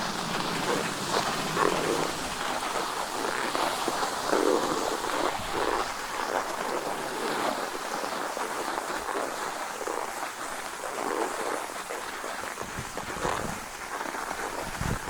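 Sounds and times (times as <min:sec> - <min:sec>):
skis scraping over snow: 0:00.0 - 0:15.0.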